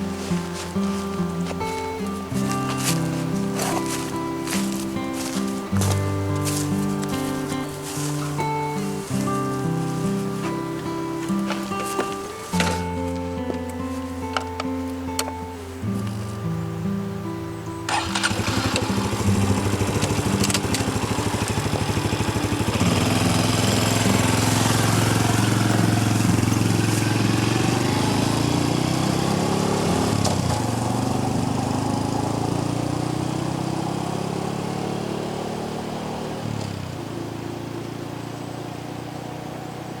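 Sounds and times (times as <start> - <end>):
small motorcycle engine revving: 0.0 - 14.4, 17.8 - 40.0.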